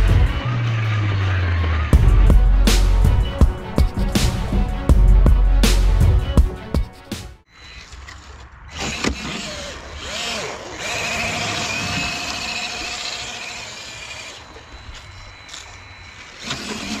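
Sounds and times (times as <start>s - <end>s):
small electric motor whining: 7.5s - 17.0s.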